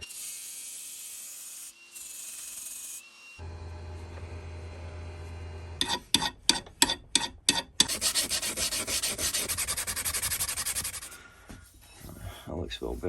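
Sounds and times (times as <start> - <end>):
abrasive rubbing on metal: 5.8 - 13.0.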